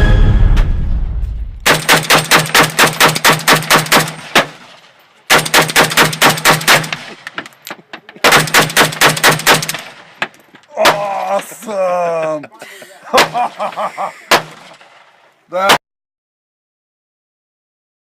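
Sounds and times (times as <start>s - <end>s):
rapid gunshots: 1.6s - 7.4s, 8.2s - 10.2s, 14.3s - 15.1s.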